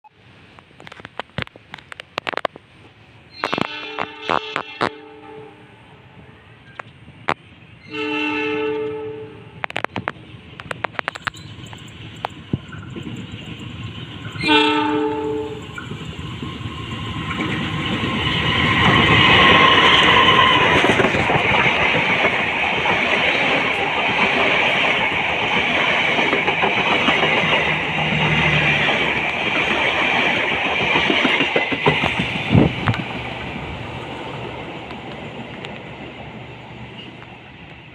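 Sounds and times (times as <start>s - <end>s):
train wheels rumbling on rail: 0.2s - 5.2s, 6.2s - 37.9s
locomotive horn: 3.4s - 6.0s, 7.8s - 9.7s, 14.4s - 15.6s
rail clacks: 9.6s - 37.9s.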